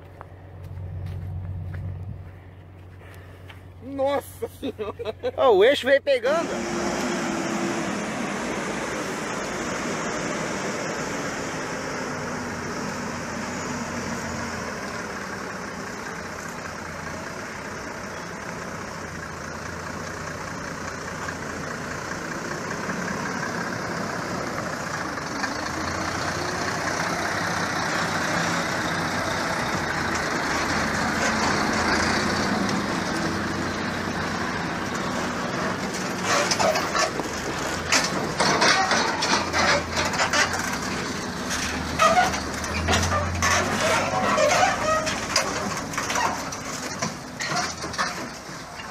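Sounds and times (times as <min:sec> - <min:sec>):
truck engine running: 0:00.0 - 0:48.9.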